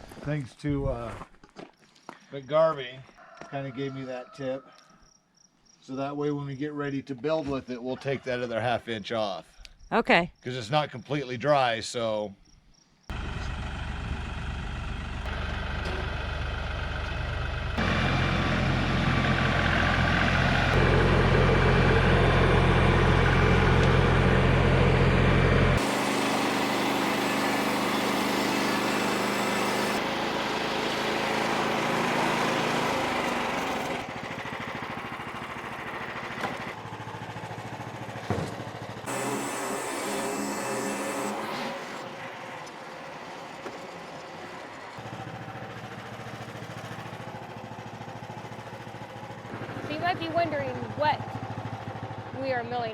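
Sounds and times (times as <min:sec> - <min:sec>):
bandsaw mill engine humming: 0:13.1 - 0:52.9.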